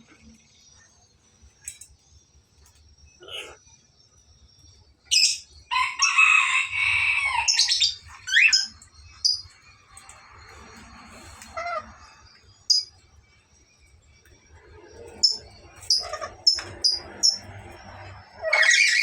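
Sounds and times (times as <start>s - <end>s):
parrot shrieking and screeching: 5.1s - 8.7s, 11.4s - 12.0s, 15.3s - 17.4s, 18.0s - 19.0s.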